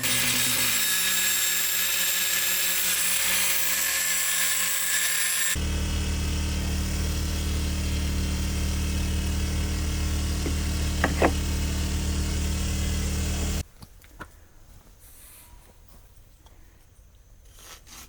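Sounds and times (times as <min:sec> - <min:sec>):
machine motor humming: 0:05.6 - 0:13.6
light knocks: 0:10.4 - 0:11.5.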